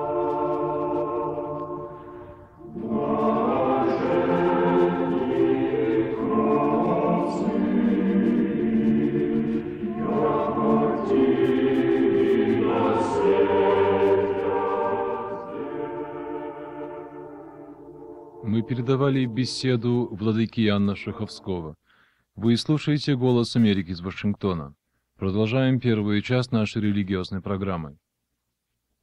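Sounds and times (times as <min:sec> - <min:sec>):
choir singing chant: 0:00.0 - 0:20.2.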